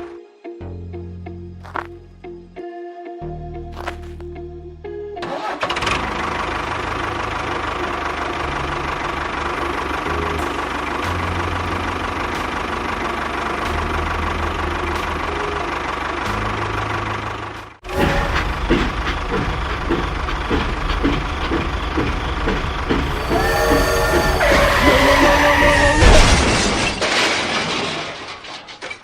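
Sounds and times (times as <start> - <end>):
engine running with low throb: 5.8 - 26.4.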